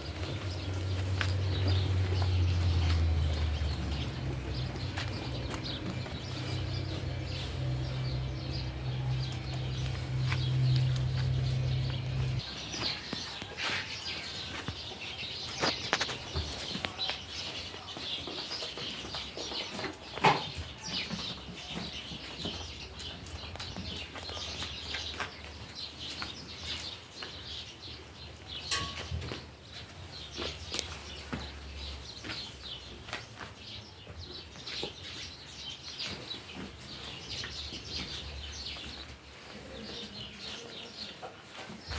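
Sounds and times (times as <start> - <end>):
low rumble: 0.0 - 12.5
birds chirping: 0.0 - 41.9.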